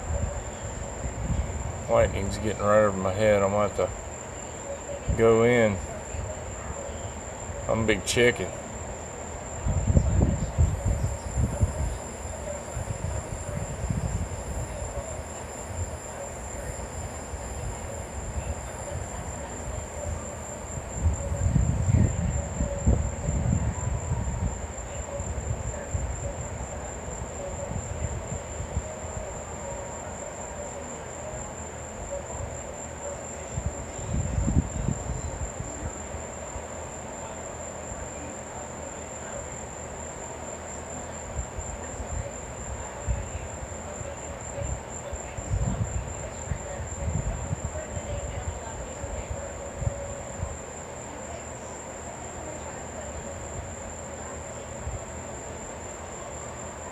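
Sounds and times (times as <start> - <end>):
high insect chirring: 0.3 - 38.0
low thunder rumbling: 9.6 - 29.5.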